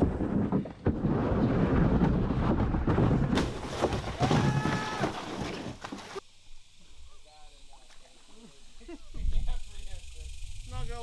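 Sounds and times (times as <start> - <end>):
kayak scraping down stone steps: 0.0 - 6.2.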